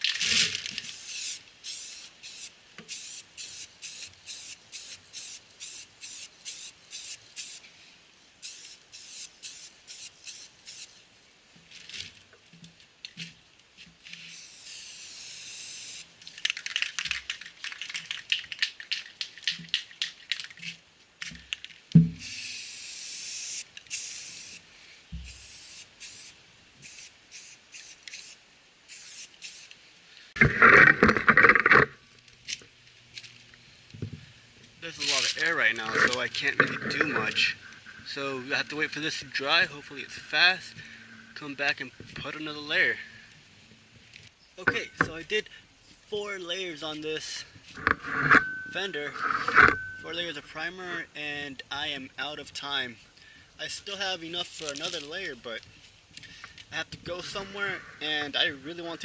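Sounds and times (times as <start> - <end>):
spray paint hissing: 0.0 - 7.7, 8.4 - 11.0, 14.2 - 16.2, 22.1 - 24.6, 25.2 - 29.8.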